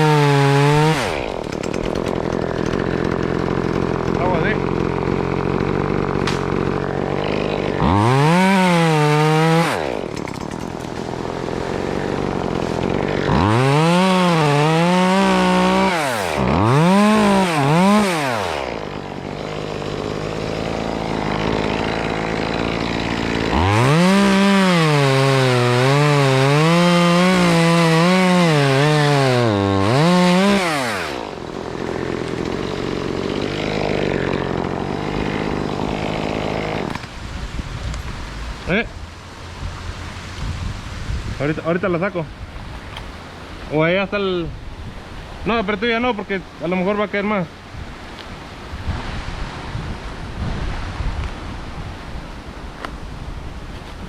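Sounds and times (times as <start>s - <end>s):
chainsaw revving and cutting: 0.0s - 37.2s.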